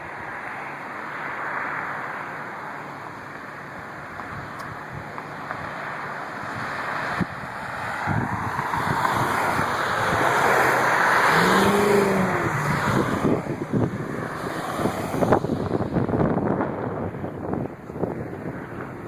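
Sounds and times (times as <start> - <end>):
road vehicle passing: 0.2 - 19.0
wind buffeting microphone: 6.4 - 19.0.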